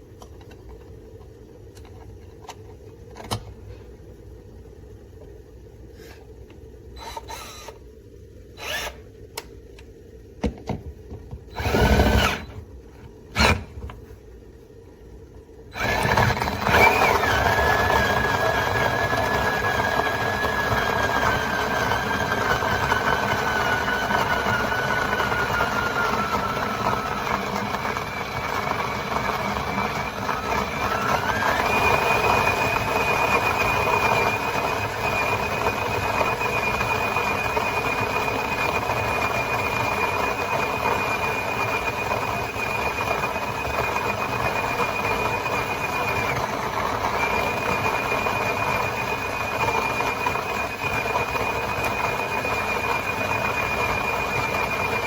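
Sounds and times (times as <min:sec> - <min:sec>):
machine whining and whirring: 0:06.9 - 0:07.9, 0:08.5 - 0:09.5, 0:11.5 - 0:14.1, 0:15.7 - 0:55.0.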